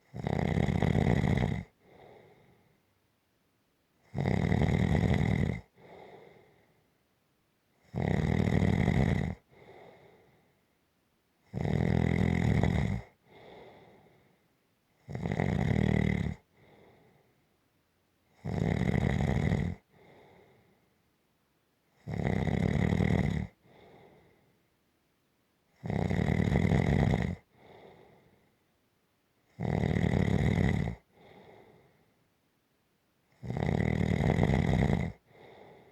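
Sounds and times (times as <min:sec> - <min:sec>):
person snoring: 0:00.1 - 0:02.4, 0:04.1 - 0:06.3, 0:07.9 - 0:09.4, 0:11.5 - 0:14.0, 0:15.1 - 0:16.4, 0:18.4 - 0:20.1, 0:22.0 - 0:23.9, 0:25.8 - 0:28.1, 0:29.6 - 0:31.8, 0:33.4 - 0:35.8
soft breath: 0:01.8 - 0:02.9, 0:05.8 - 0:07.0, 0:09.5 - 0:10.8, 0:13.2 - 0:14.6, 0:16.4 - 0:17.6, 0:19.8 - 0:21.0, 0:23.6 - 0:24.7, 0:27.5 - 0:28.7, 0:31.0 - 0:32.2, 0:35.2 - 0:35.9.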